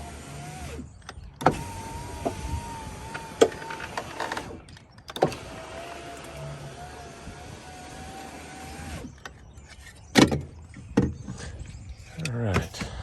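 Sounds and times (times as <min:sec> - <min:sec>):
power window motor whining: 0:00.0 - 0:09.4.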